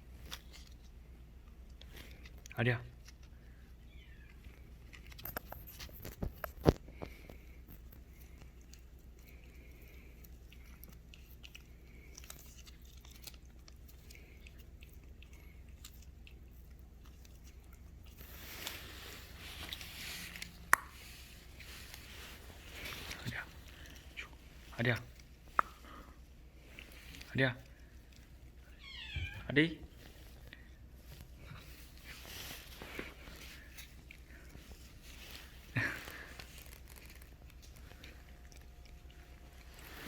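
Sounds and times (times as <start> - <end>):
claws scratching on blanket: 11.0 - 25.6, 29.9 - 40.0
blanket rustling: 18.2 - 24.7, 30.9 - 34.0.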